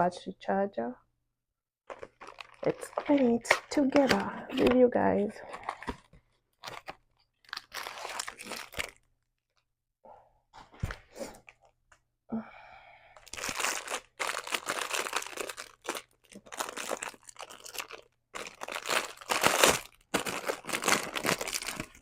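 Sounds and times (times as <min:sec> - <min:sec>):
packaging crinkling and tearing: 0:01.9 - 0:04.8, 0:05.4 - 0:09.1, 0:13.2 - 0:22.0.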